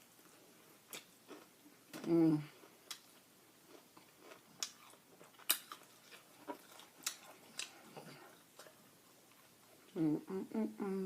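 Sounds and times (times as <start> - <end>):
chewing and crunching food: 0.2 - 10.0.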